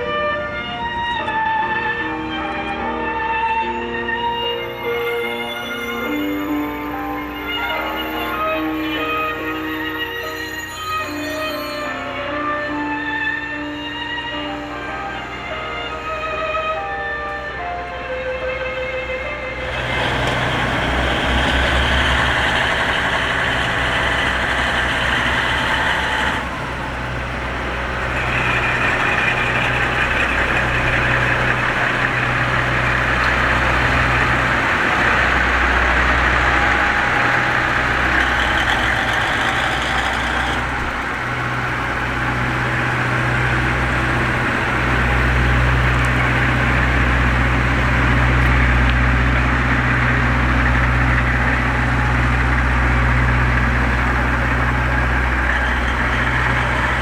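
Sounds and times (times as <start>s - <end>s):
heavy engine idling: 19.4s - 57.0s.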